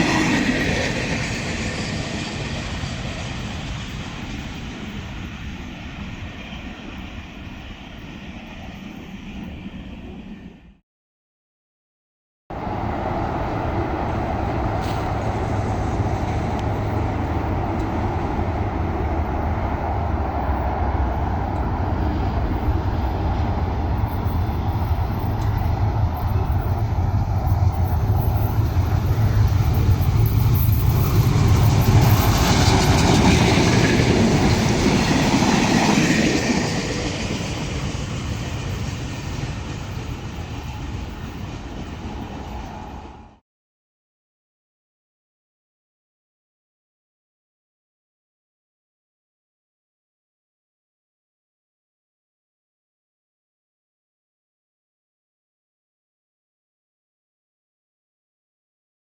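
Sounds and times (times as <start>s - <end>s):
train rumbling past: 0.0s - 10.8s, 12.5s - 43.4s.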